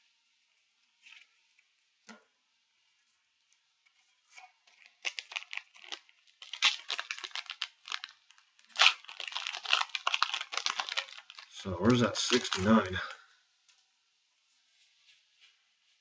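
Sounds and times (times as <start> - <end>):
foil wrapper tearing and crinkling: 4.4 - 13.2.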